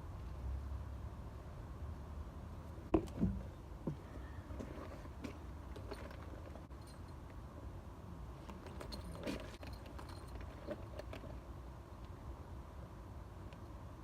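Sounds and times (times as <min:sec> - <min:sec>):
work gear clinking and rustling: 0:02.9 - 0:07.5, 0:08.3 - 0:11.6.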